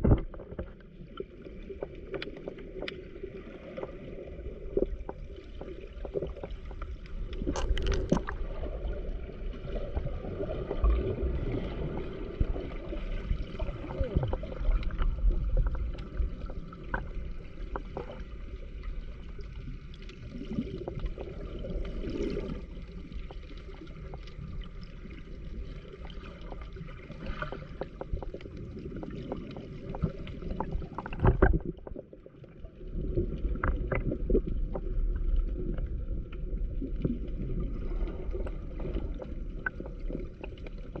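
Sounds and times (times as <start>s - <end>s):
water lapping against rocks: 6.0s - 8.7s.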